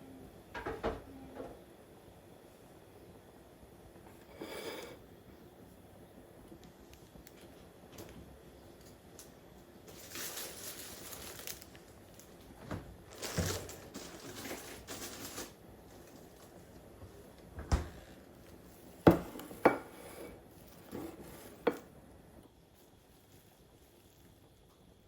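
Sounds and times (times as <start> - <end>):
rustling and handling noise: 6.5 - 25.0.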